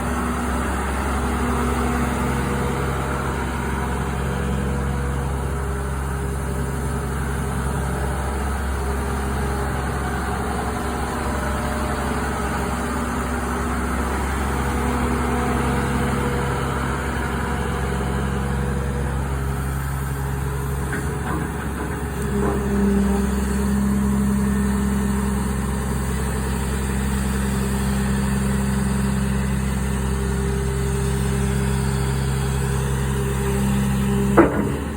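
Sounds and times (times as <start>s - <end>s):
excavator engine and hydraulics humming: 0.0s - 34.9s.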